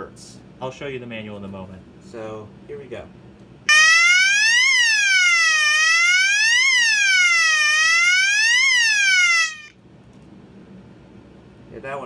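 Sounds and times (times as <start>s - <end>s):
fire alarm siren wailing: 3.7s - 9.7s.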